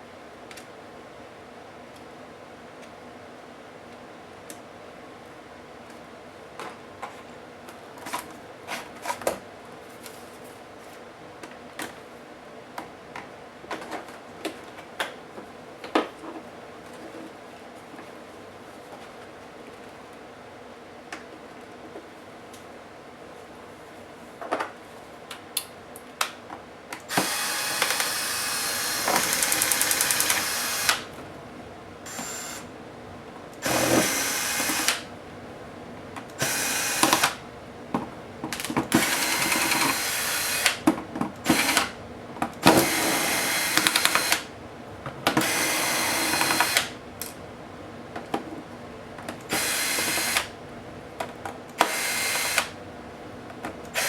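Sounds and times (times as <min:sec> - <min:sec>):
electric screwdriver running: 0:27.1 - 0:31.1, 0:32.1 - 0:32.7, 0:33.6 - 0:35.0, 0:36.4 - 0:37.4, 0:38.9 - 0:40.8, 0:41.5 - 0:41.9, 0:42.7 - 0:44.4, 0:45.4 - 0:46.9, 0:49.5 - 0:50.5, 0:51.8 - 0:52.7.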